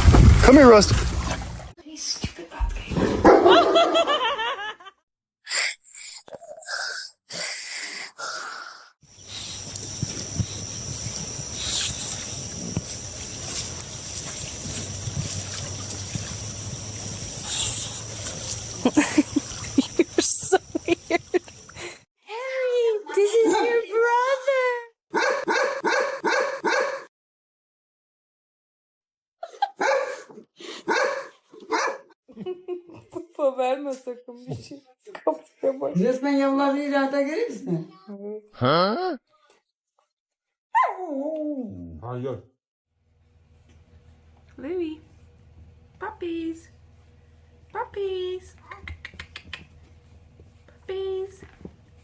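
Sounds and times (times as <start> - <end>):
dog barking: 25.1 - 27.1, 29.8 - 32.2.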